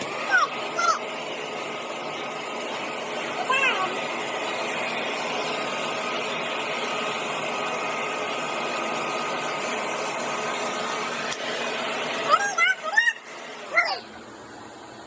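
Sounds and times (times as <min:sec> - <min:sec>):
vacuum cleaner running: 0:00.0 - 0:15.0.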